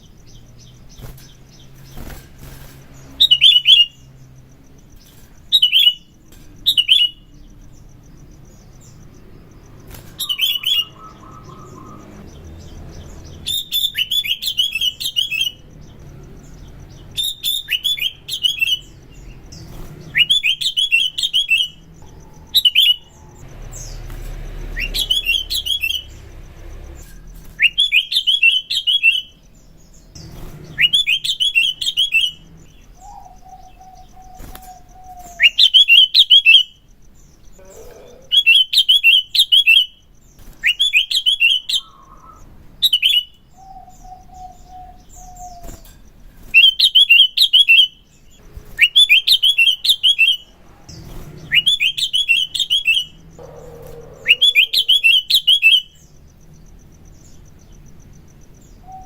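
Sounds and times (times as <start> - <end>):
bulbul singing chirpy phrases: 20.1 - 24.0, 37.4 - 40.0, 48.6 - 57.6.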